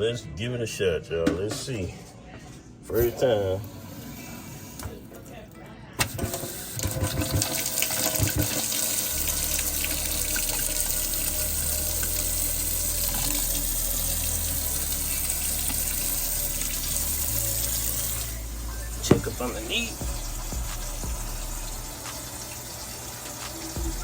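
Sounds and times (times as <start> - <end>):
faucet running water into sink: 6.0 - 24.0.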